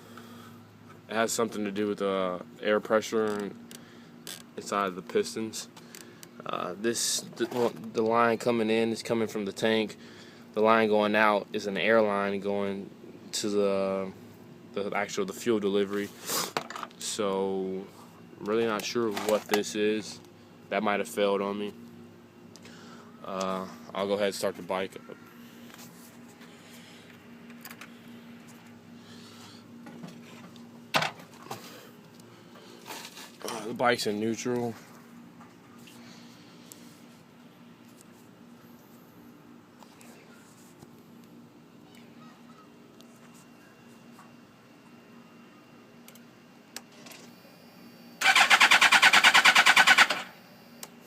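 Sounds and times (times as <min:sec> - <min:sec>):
faint steady hum: 0:00.0 - 0:51.0
motorcycle starter cranking engine: 0:48.2 - 0:50.3.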